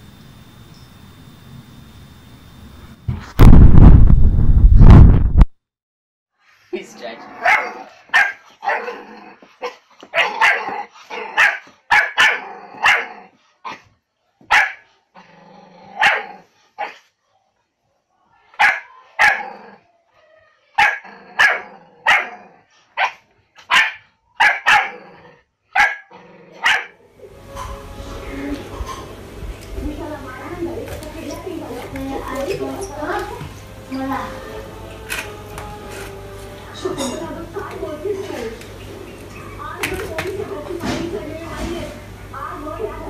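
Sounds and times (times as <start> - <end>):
dog barking: 7.4 - 9.0, 9.6 - 13.8, 14.5 - 14.9, 16.0 - 17.1, 18.5 - 19.6, 20.8 - 22.4, 23.0 - 25.0, 25.7 - 27.0.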